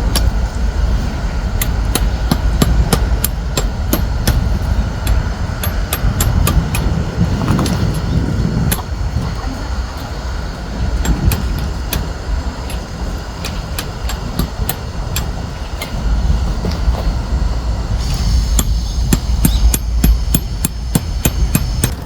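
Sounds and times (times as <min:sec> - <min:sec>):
low rumble: 0:00.0 - 0:22.0
sharp clicks and knocks: 0:00.1 - 0:00.4, 0:01.6 - 0:08.1, 0:11.0 - 0:16.0.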